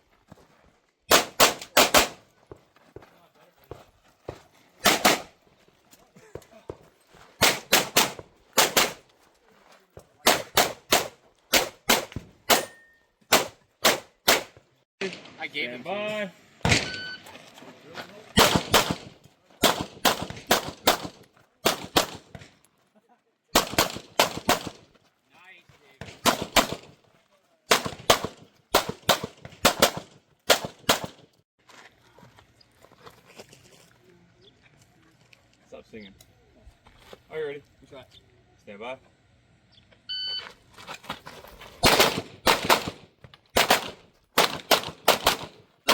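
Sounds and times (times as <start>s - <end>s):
rapid pistol shots: 1.1s - 2.2s, 4.8s - 5.3s, 7.4s - 9.0s, 10.2s - 12.7s, 13.3s - 14.6s, 18.4s - 22.4s, 23.6s - 24.8s, 26.1s - 27.0s, 27.7s - 31.2s, 41.8s - 45.9s.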